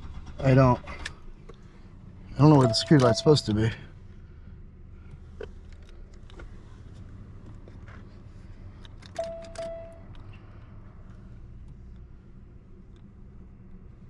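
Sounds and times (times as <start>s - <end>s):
low steady hum: 0.0s - 14.0s
electronic beep: 2.6s - 3.5s, 9.2s - 10.0s.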